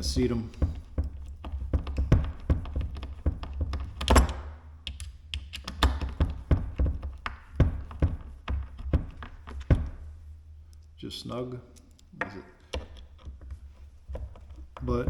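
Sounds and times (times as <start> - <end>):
screwdriver clicks and taps: 11.8 - 14.8.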